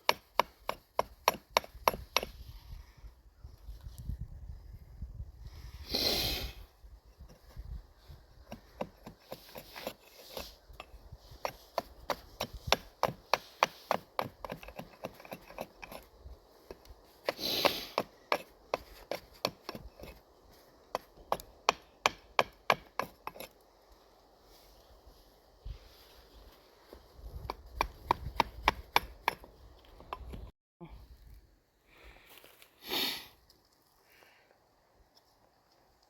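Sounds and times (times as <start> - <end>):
axe chopping wood: 0.0 - 2.3, 11.4 - 15.7, 17.2 - 20.2, 20.9 - 23.4, 27.4 - 29.5.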